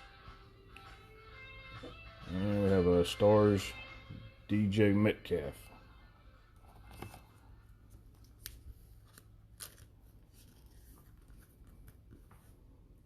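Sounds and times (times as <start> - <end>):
trading cards clicking and rustling: 6.6 - 12.4.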